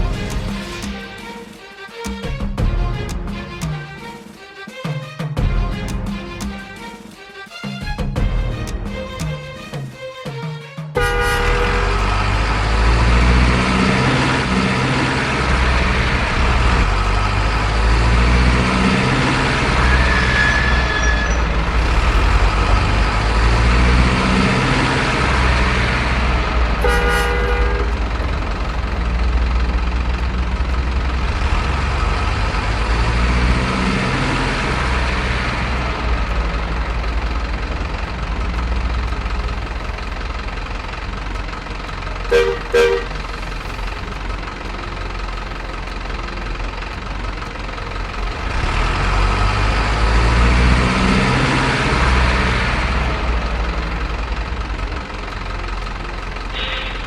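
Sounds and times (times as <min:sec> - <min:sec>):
truck diesel engines rumbling: 0:00.0 - 0:57.0
short horn toot: 0:11.0 - 0:12.2, 0:26.8 - 0:27.9, 0:42.3 - 0:43.1, 0:56.6 - 0:57.0.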